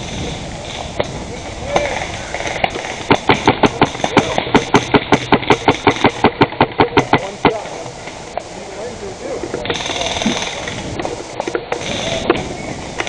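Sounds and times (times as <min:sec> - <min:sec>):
faint distant voices: 0:00.0 - 0:13.0
outdoor noise: 0:00.0 - 0:13.0
airsoft gun firing rapidly: 0:02.4 - 0:07.6.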